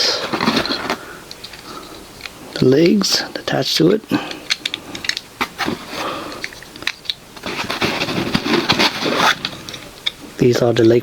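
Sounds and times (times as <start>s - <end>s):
plastic toy parts clicking: 3.8s - 5.7s, 6.3s - 7.2s.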